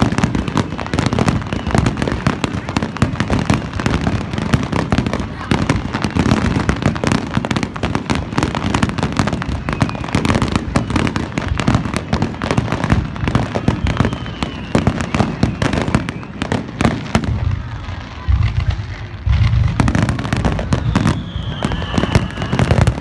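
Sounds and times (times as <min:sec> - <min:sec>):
fireworks bangs and crackles: 0:00.0 - 0:23.0.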